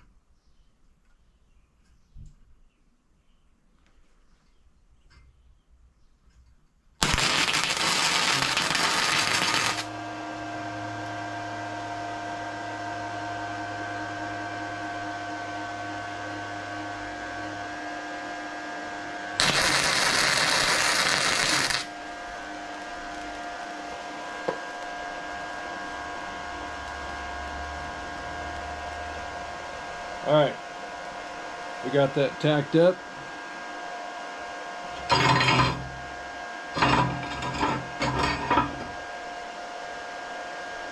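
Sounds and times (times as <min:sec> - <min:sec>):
machine hum with faint whine: 0:00.0 - 0:40.9
crackling welding arc: 0:07.0 - 0:09.9, 0:19.4 - 0:27.3.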